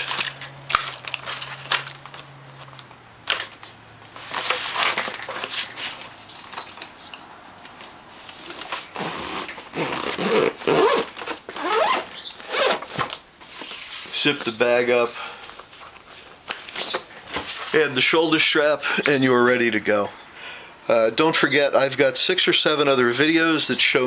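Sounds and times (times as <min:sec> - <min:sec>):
rustling of gear being packed: 0:00.0 - 0:14.2.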